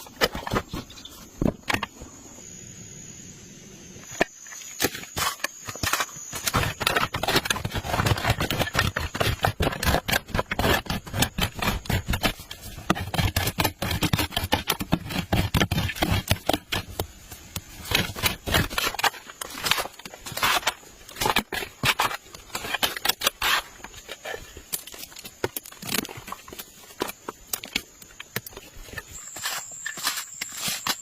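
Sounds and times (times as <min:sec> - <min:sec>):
hand tool scraping and knocking: 0:04.8 - 0:31.0.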